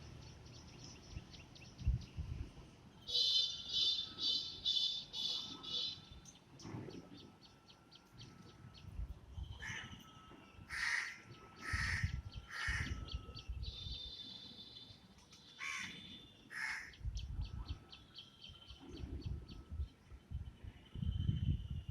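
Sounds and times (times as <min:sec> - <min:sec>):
harsh raspy bird calls: 0:10.7 - 0:13.0, 0:15.6 - 0:17.0.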